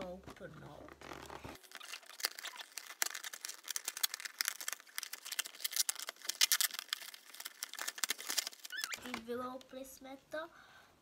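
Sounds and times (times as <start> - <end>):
cardboard crackling and tearing: 0.9 - 9.1.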